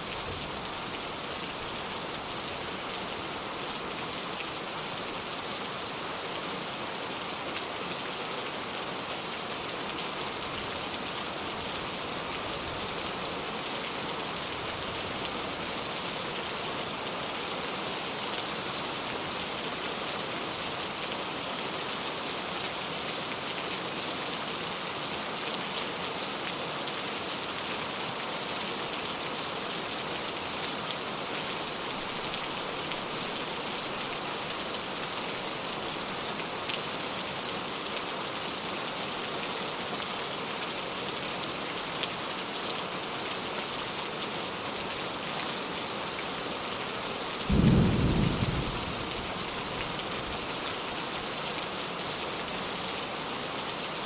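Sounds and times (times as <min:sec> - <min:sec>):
steady rain: 0:00.0 - 0:54.0
low thunder clap: 0:47.5 - 0:49.3.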